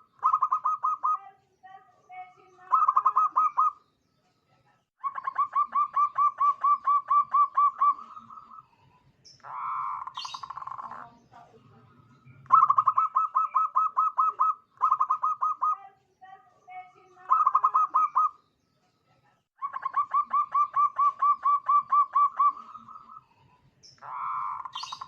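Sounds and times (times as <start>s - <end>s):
dove cooing: 0.0s - 1.2s, 2.6s - 3.8s, 5.0s - 8.7s, 9.4s - 11.2s, 12.4s - 15.8s, 17.2s - 18.4s, 19.6s - 23.3s, 24.0s - 25.0s.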